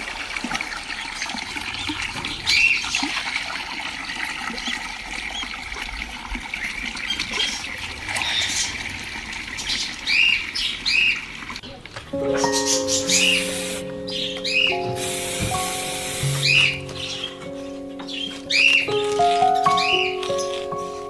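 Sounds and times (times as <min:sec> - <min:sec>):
crackly bird chatter: 0:04.0 - 0:14.9, 0:15.6 - 0:21.0
budgerigars chirping: 0:12.3 - 0:19.0, 0:19.6 - 0:20.6.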